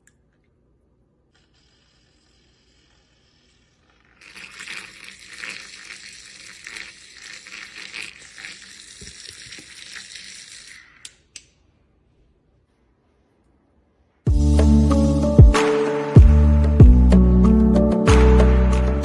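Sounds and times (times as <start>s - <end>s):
liquid fizzing in a mug: 1.3s - 11.0s.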